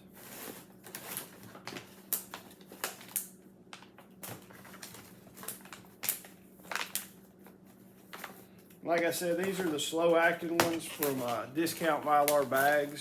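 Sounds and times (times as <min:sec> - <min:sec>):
plastic bags crinkling: 0:00.0 - 0:13.0.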